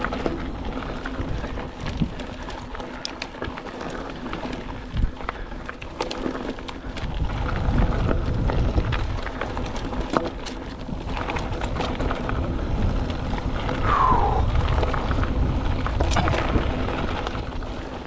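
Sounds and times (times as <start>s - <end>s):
wind rumble on microphone: 0.0s - 2.7s, 6.9s - 10.2s, 10.8s - 18.0s
bike chain and frame rattling: 0.0s - 13.7s, 14.6s - 18.0s
bike tyres crunching on dirt: 0.0s - 18.0s.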